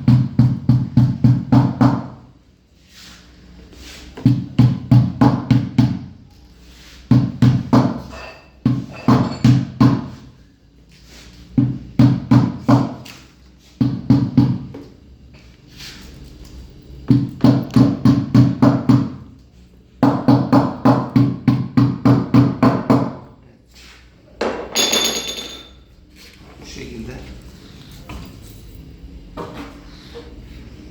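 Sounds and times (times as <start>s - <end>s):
hammer blows ringing hollow: 0.0s - 2.2s, 20.0s - 23.2s.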